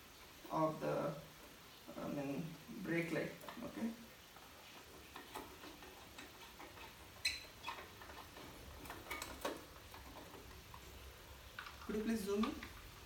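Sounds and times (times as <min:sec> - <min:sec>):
small hard parts clicking: 0:03.3 - 0:13.0.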